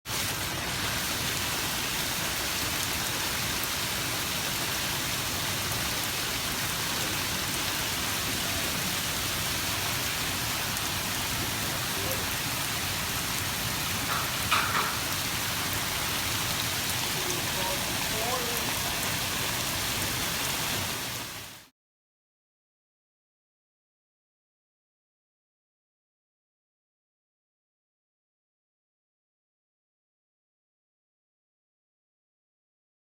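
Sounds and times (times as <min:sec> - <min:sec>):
heavy rain falling: 0:00.1 - 0:21.7.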